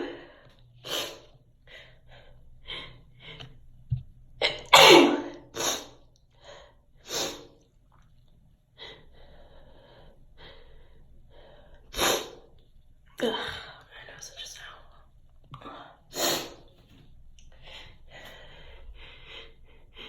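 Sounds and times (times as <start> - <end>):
person sneezing: 4.4 - 5.9.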